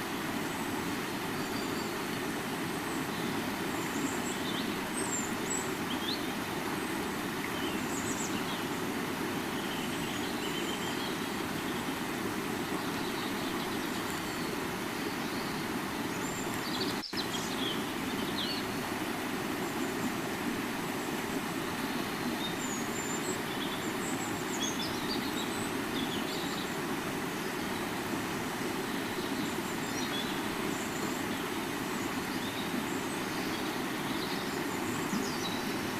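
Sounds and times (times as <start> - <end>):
river water flowing: 0.0 - 35.9
small birds chirping: 1.3 - 20.2, 29.0 - 35.9.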